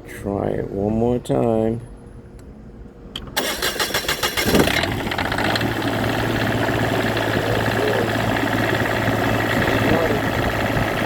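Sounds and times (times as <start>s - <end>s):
diesel generator running: 3.1s - 11.0s
generator starter cranking: 3.2s - 11.0s.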